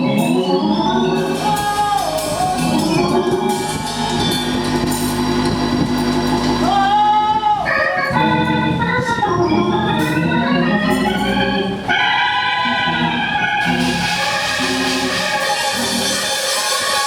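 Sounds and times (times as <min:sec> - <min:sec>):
organ playing held chords: 0:00.0 - 0:17.0.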